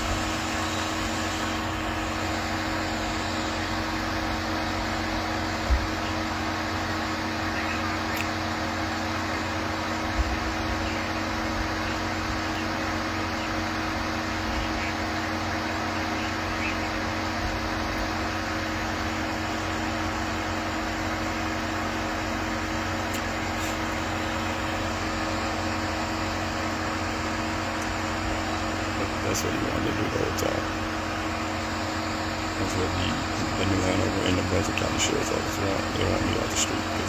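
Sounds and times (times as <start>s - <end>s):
vehicle and ventilation fan hum: 0.0s - 37.0s.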